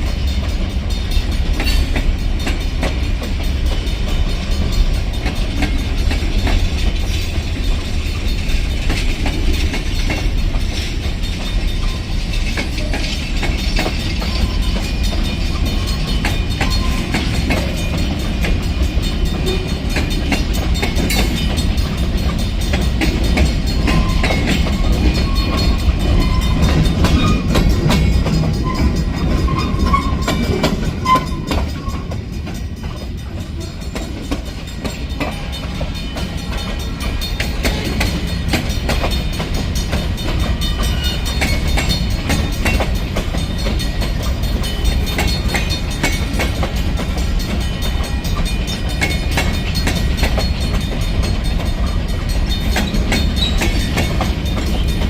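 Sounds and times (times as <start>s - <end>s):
freight train rumbling: 0.0s - 55.0s
wheels clicking over rail joints: 0.0s - 55.0s.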